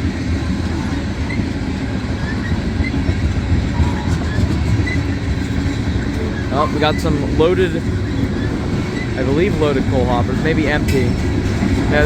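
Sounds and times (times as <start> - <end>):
train wheels rumbling on rails: 0.0 - 12.0.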